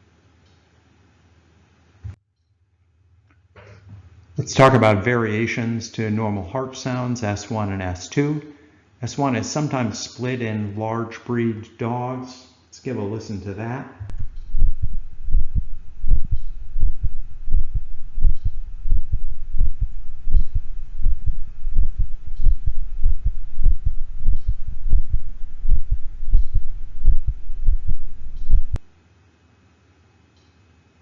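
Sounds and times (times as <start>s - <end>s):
low steady hum: 13.9s - 29.0s
heartbeat thumps: 14.0s - 28.8s.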